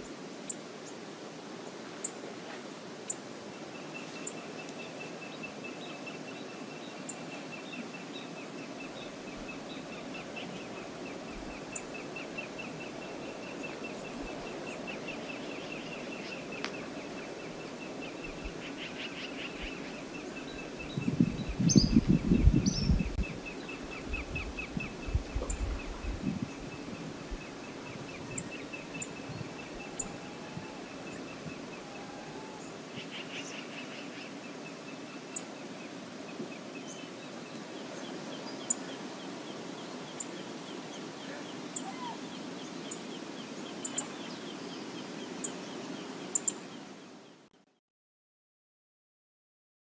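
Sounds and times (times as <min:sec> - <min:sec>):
river water rushing: 0:26.5 - 0:47.2.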